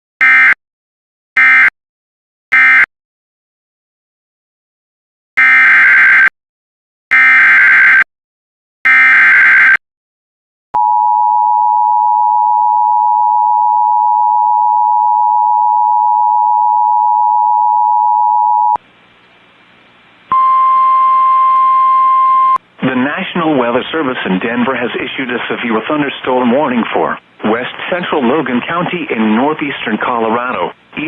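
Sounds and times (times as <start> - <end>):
two-tone attention signal: 20.3 - 22.6
faint radio hiss: 22.6 - 31.0.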